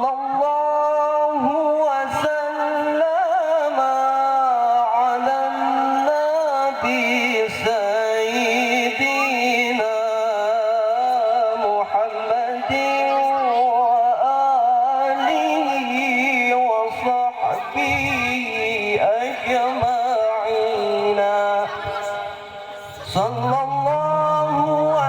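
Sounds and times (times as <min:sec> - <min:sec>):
person chanting melismatic phrases: 0:16.6 - 0:25.0.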